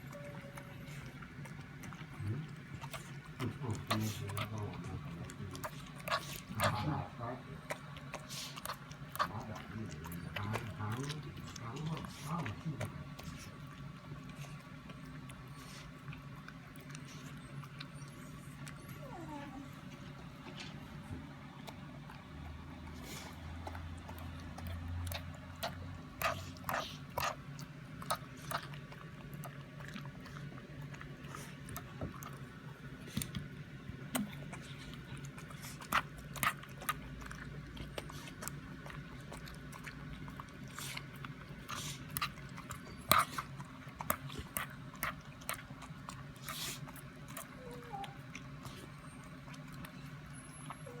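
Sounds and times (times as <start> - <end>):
dog crunching food: 0.0 - 51.0
faint steady hum: 0.0 - 51.0.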